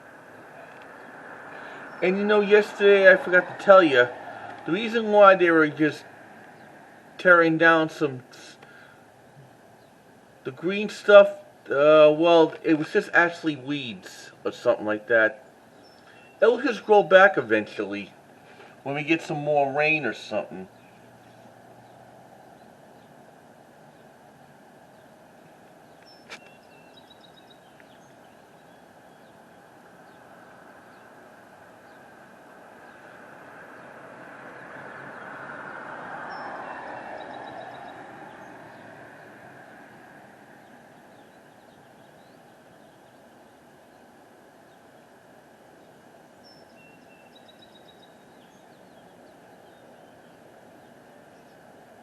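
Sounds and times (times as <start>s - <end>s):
faint background noise: 0.0s - 52.0s
street traffic hum: 0.0s - 52.0s
bird chirps: 15.4s - 17.5s, 24.9s - 31.2s, 36.2s - 39.8s, 40.6s - 51.7s.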